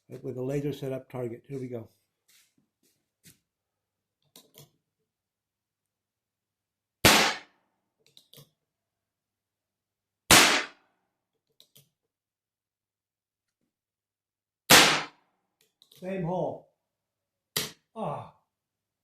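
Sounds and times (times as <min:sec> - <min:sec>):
revolver gunshots: 0:07.0 - 0:07.5, 0:10.3 - 0:10.8, 0:14.7 - 0:15.2.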